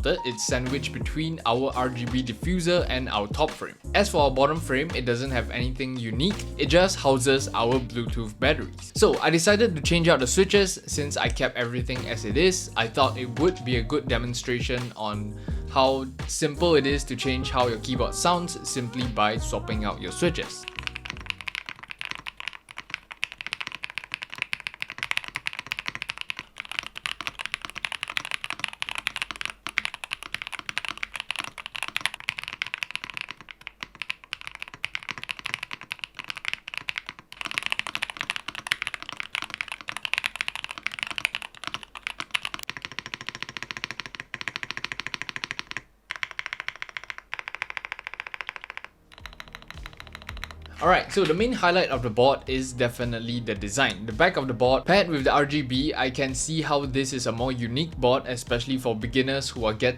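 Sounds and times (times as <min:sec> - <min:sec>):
rapid keyboard keystrokes: 0:18.9 - 0:52.1.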